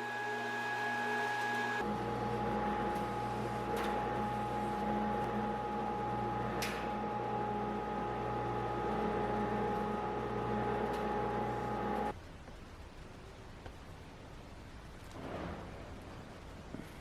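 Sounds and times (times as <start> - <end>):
dust collector whirring: 0.0 - 12.1.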